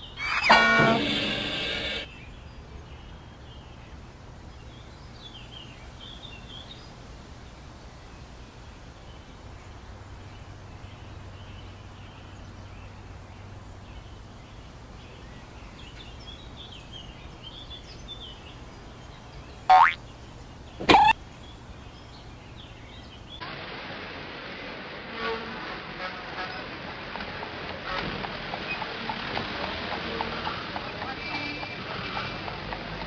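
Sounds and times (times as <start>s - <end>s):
small birds chirping: 2.1s - 23.4s.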